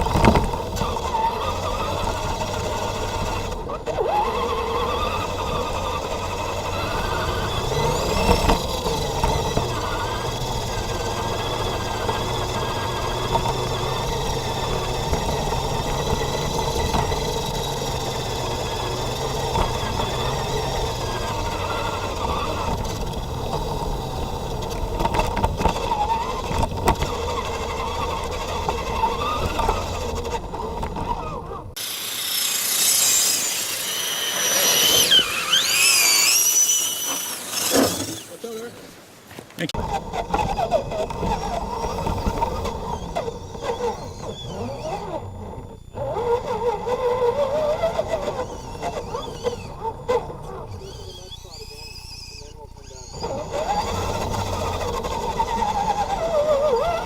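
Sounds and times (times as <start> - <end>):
electric motor whining: 0.0 - 38.6, 39.8 - 57.0
high-pitched wavering squeals: 31.2 - 38.6, 50.8 - 57.0.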